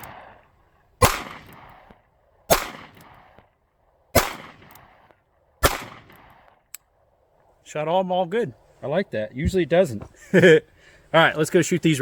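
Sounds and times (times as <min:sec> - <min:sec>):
revolver shots with echo: 0:01.0 - 0:01.9, 0:04.2 - 0:04.8, 0:05.6 - 0:06.3.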